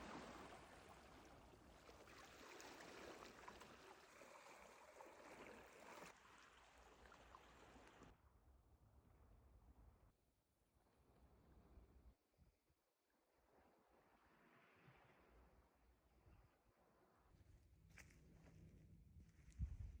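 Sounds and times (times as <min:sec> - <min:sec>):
faint sea waves washing: 0:00.0 - 0:08.1.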